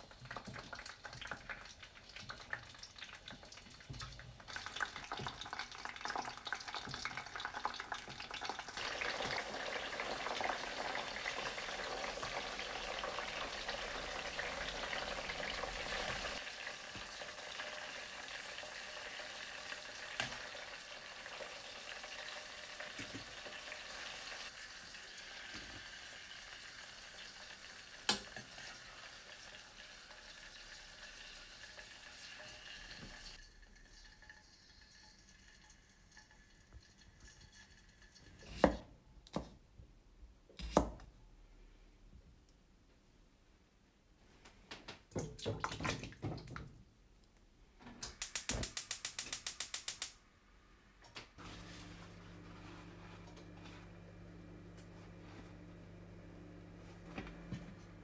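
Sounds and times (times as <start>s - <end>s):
food sizzling in hot oil: 0.1s - 38.6s
sharp click: 48.0s - 50.2s.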